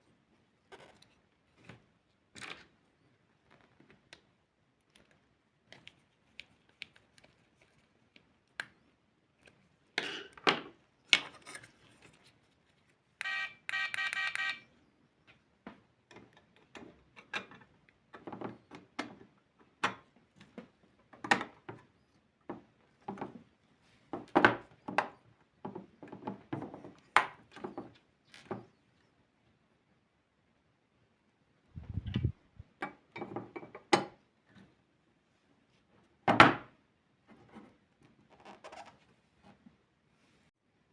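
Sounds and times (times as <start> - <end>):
short steady buzzing tone: 13.2 - 14.6.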